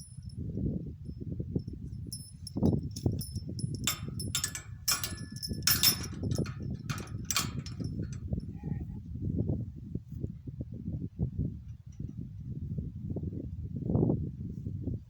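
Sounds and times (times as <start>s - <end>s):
metal harness fittings clinking: 2.1s - 8.4s.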